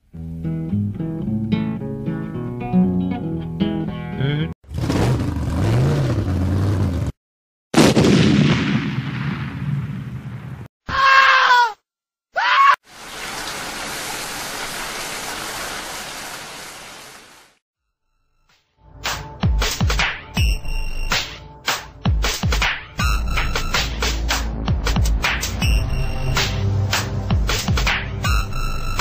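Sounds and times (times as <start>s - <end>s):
short pitched cries: 10.9s - 11.8s
steady rain: 12.8s - 17.6s.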